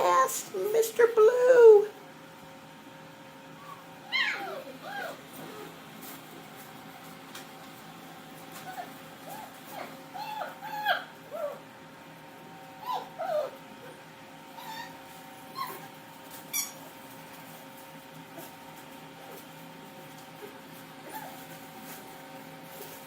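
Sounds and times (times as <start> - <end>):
faint steady hum: 0.0 - 23.0
puppies whimpering: 3.6 - 5.8, 8.6 - 11.7, 12.8 - 17.0, 20.4 - 21.5.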